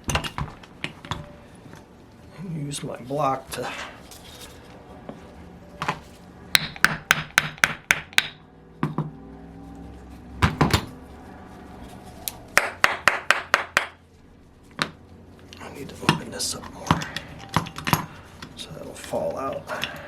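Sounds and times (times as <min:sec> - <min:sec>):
hammer tapping on metal: 0:06.6 - 0:09.2, 0:12.6 - 0:14.0.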